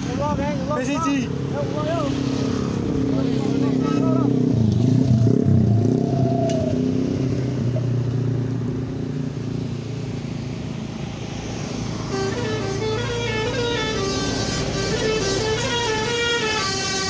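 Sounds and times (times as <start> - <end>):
large vehicle engine passing: 0.0 - 16.1
musical bus horn melody: 12.0 - 17.0.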